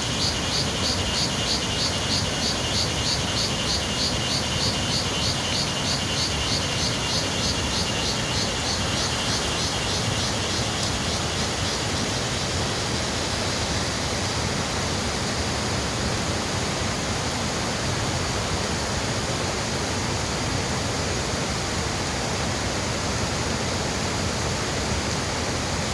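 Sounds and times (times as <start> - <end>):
insects chirping: 0.0 - 13.6.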